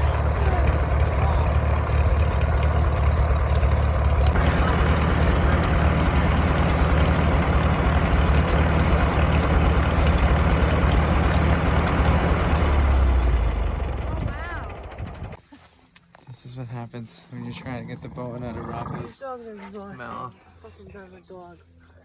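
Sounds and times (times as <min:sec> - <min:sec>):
tractor engine running: 0:00.0 - 0:15.4.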